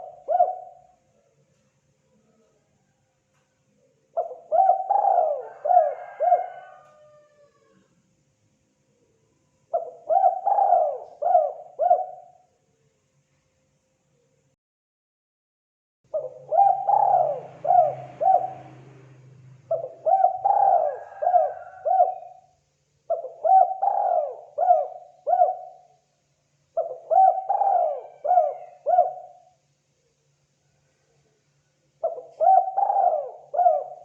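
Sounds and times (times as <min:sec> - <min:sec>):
dove cooing: 0:00.0 - 0:01.0, 0:04.1 - 0:07.8, 0:09.7 - 0:12.4, 0:16.1 - 0:22.5, 0:23.1 - 0:26.0, 0:26.8 - 0:29.6, 0:32.0 - 0:34.0.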